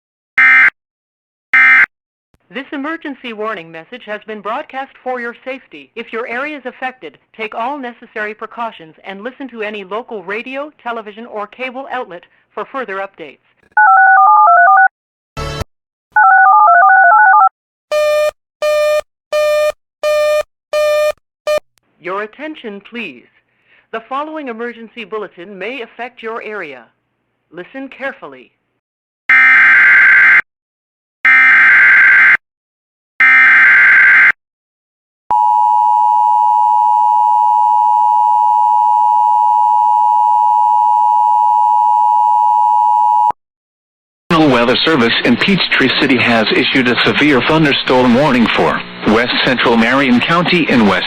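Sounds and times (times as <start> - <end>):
telephone touch-tone dialing: 16.2 - 17.5
pulsing busy signal tone: 35.3 - 43.4.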